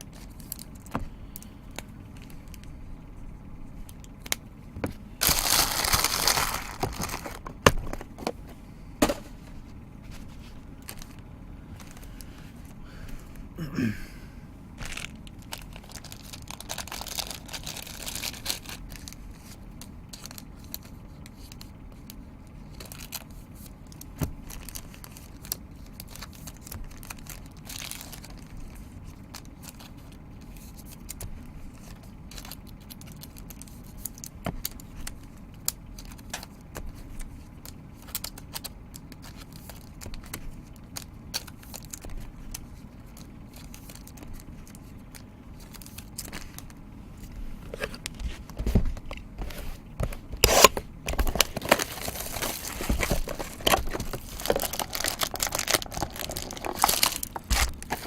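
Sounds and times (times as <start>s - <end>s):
wrapper crinkling and tearing: 5.2s - 8.0s, 14.8s - 19.5s, 22.7s - 30.7s, 38.0s - 42.2s, 43.1s - 46.7s, 50.2s - 58.0s.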